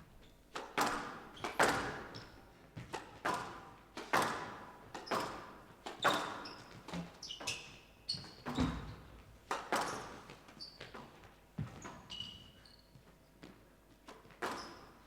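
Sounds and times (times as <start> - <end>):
shoes squeaking on court: 0.2 - 15.0
squash ball hits echoing: 2.9 - 5.5.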